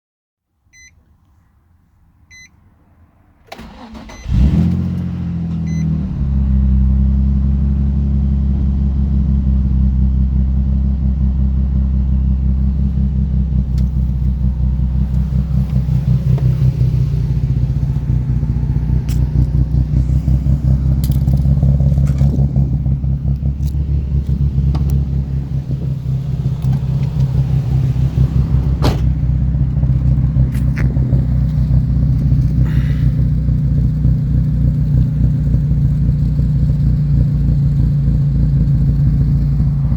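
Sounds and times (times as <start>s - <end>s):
short electronic beeps: 2.3s - 2.5s, 5.6s - 5.9s
car engine cranking and idling roughly: 3.6s - 39.9s.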